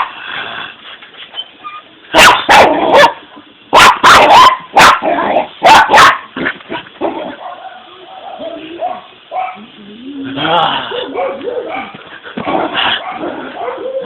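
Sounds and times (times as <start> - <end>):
dog barking loudly: 2.1 - 9.7, 10.9 - 14.0.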